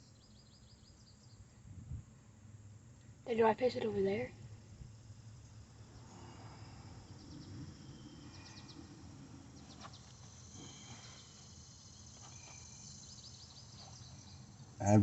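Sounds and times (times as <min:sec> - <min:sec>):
low steady hum: 0:00.0 - 0:15.0
small birds chirping: 0:04.9 - 0:15.0.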